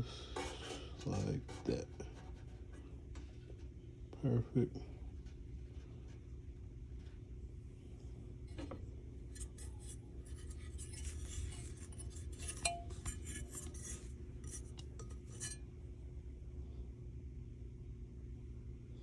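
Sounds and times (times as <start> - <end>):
ringing metal clink: 12.4 - 13.4.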